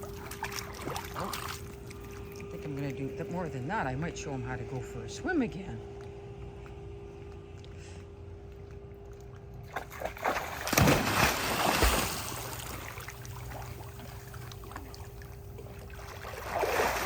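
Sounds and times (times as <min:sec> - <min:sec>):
dog splashing in pool: 0:00.0 - 0:03.0, 0:09.6 - 0:17.0
water sloshing: 0:00.0 - 0:07.3, 0:08.4 - 0:17.0.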